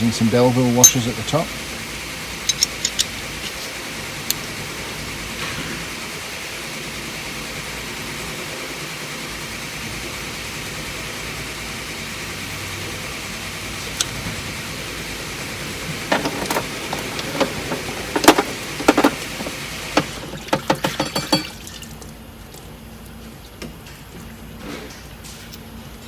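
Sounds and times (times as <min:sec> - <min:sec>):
sharp clicks and knocks: 0:15.9 - 0:21.4.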